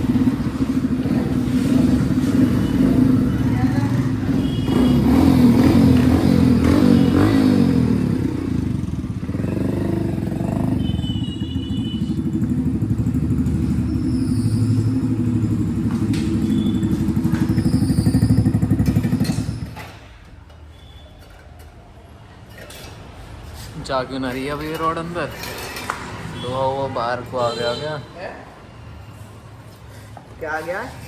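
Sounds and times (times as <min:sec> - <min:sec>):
motorcycle engine revving: 0:00.0 - 0:19.9.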